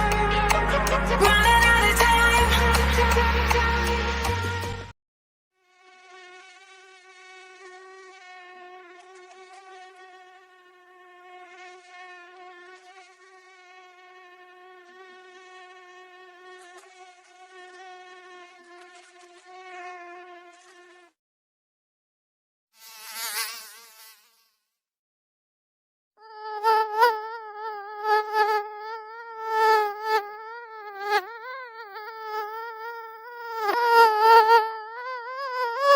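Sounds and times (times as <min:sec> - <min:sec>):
mosquito wingbeat whine: 0:26.2 - 0:35.9.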